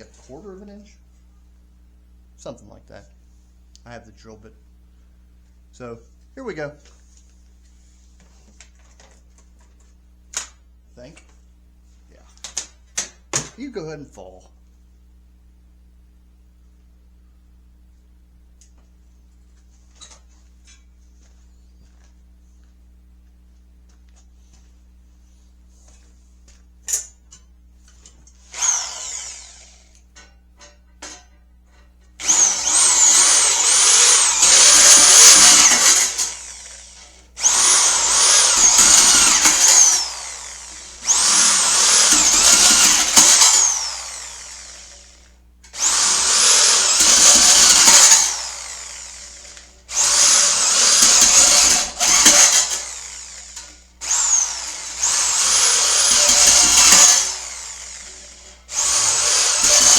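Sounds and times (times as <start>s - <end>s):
power drill whining: 28.4s - 30.0s, 32.2s - 59.9s.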